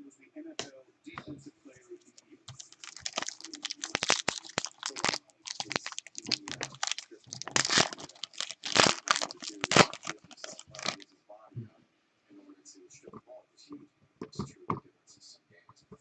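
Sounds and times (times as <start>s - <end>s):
foil wrapper tearing and crinkling: 2.6s - 11.0s.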